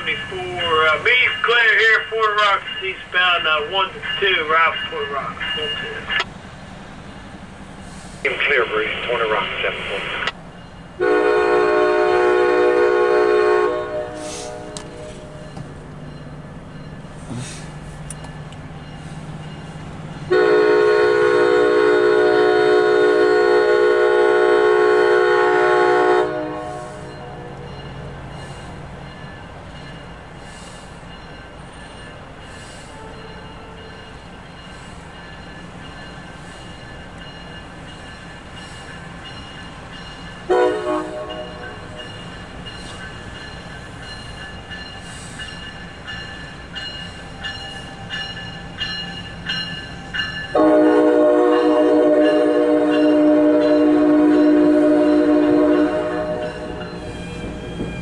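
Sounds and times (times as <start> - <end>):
low rumble of a train: 0.0 - 58.0
locomotive air horn blasts: 11.0 - 15.4, 20.3 - 27.5, 40.5 - 42.0, 50.6 - 56.8.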